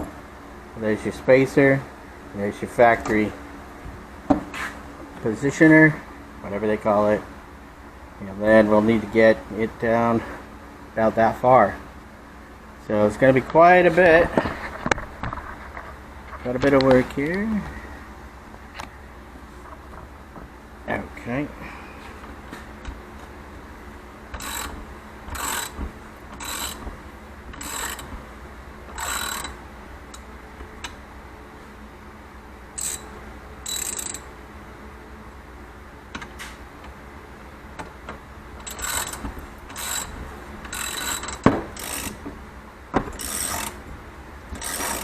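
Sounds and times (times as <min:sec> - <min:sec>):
ratchet wrench clicking: 0:24.3 - 0:25.8, 0:26.4 - 0:26.8, 0:27.5 - 0:28.1, 0:28.9 - 0:30.2, 0:32.8 - 0:34.3, 0:38.6 - 0:40.1, 0:40.7 - 0:42.2, 0:43.2 - 0:43.8, 0:44.6 - 0:45.0.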